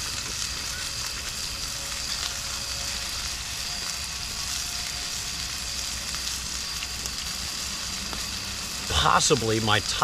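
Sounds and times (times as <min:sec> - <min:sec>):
steak sizzling over fire: 0:00.0 - 0:10.0.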